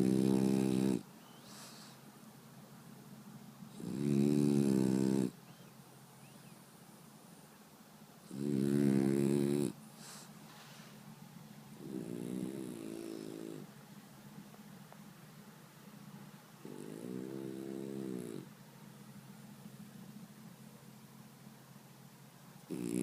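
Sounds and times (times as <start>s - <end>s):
dog snoring loudly: 0.0s - 1.9s, 3.7s - 5.4s, 8.2s - 10.2s, 11.8s - 13.7s, 16.6s - 18.5s, 22.6s - 23.0s.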